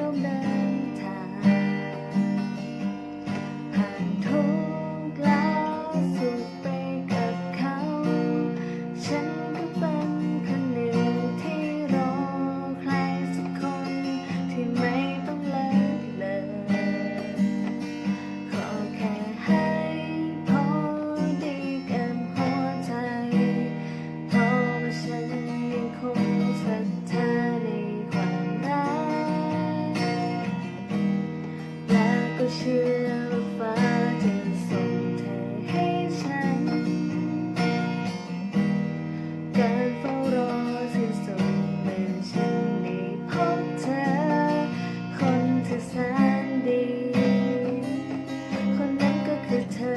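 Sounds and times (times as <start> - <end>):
acoustic guitar strumming: 0.0 - 49.9.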